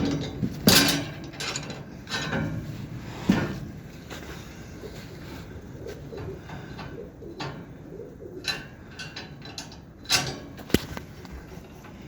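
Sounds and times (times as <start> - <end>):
knocks and rattles of handling: 0.0 - 4.5, 8.4 - 12.0.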